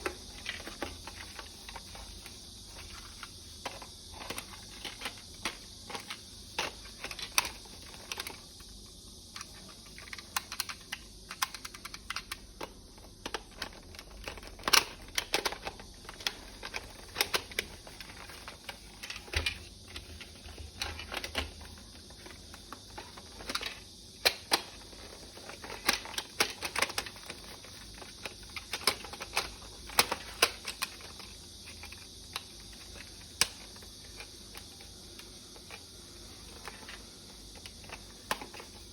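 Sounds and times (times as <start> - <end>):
plastic toy parts clicking: 0.0 - 8.6, 9.3 - 38.8
faint steady hiss: 0.0 - 38.9.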